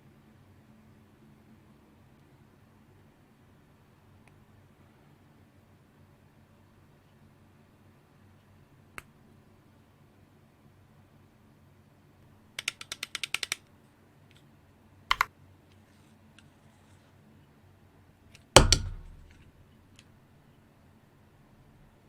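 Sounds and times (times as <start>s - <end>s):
plastic knock: 18.6s - 19.4s.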